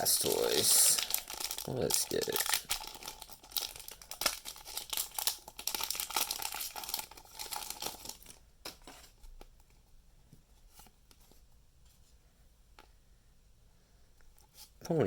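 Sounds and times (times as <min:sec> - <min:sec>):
foil wrapper crinkling and tearing: 0:00.0 - 0:09.0.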